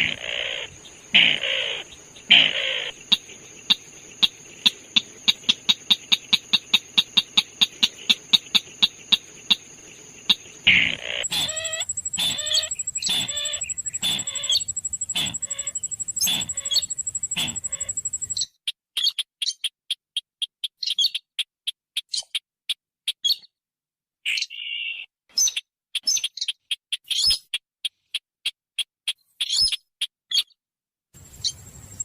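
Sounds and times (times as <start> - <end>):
bird harsh chattering calls: 0.0 - 19.7
bird sharp clicking notes: 1.1 - 22.4.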